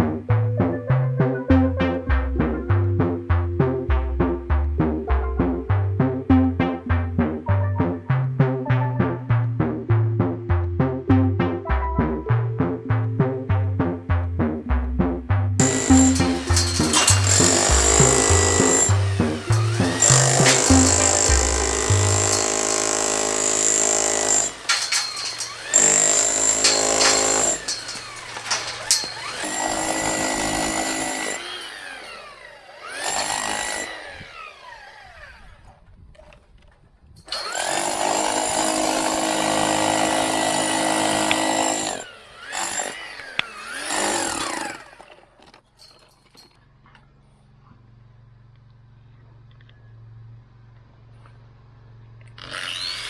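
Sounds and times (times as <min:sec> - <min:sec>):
power tool motor whining: 0:15.6 - 0:35.8, 0:37.3 - 0:45.4, 0:52.4 - 0:53.0.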